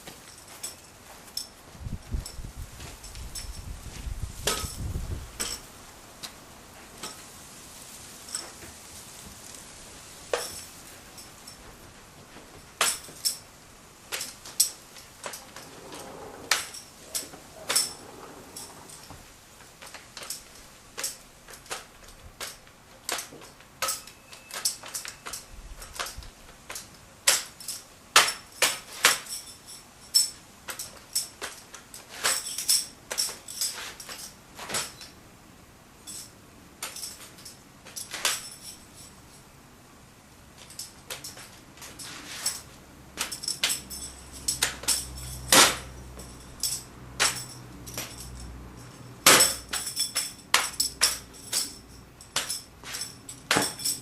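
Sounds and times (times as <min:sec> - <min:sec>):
metallic clink: 0:04.4 - 0:05.7, 0:10.3 - 0:11.7, 0:12.8 - 0:13.5, 0:14.1 - 0:19.2, 0:19.8 - 0:35.2, 0:36.0 - 0:39.5, 0:40.6 - 0:54.0.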